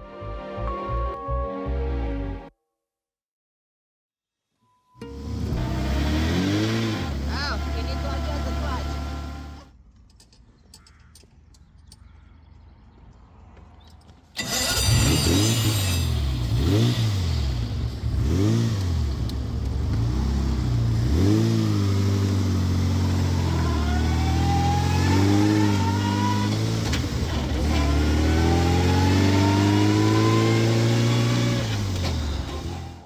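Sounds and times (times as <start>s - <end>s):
car engine revving: 5.1s - 9.7s, 14.4s - 33.0s
supercharger whine: 14.4s - 33.0s.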